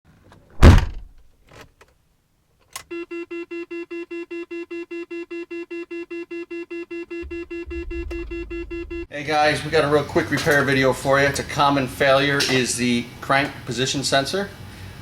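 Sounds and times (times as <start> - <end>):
pulsing keyboard note: 7.1 - 9.1
low bass: 7.2 - 9.1.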